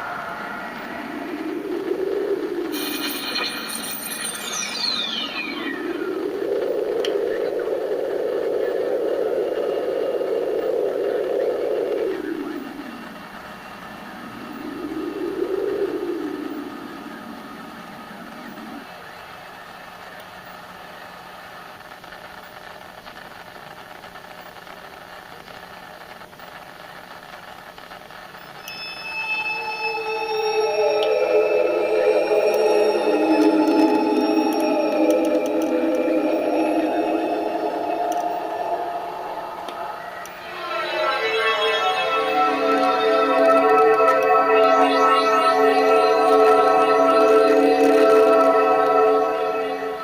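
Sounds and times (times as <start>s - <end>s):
rushing hiss-like noise sweeping in pitch: 0.0s - 17.6s, 28.6s - 50.0s
faint high-pitched hum: 0.0s - 27.4s, 28.3s - 50.0s.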